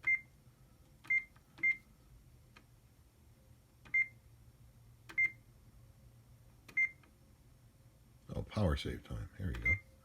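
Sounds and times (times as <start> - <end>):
faint low hum: 0.0 - 10.0
high-pitched key beeps: 9.6 - 10.0.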